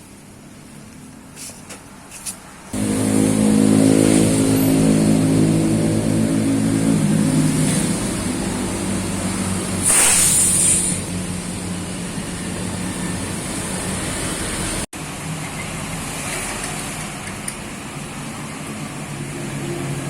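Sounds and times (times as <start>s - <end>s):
scooter engine running: 2.7s - 9.8s
loud hiss: 9.6s - 11.3s.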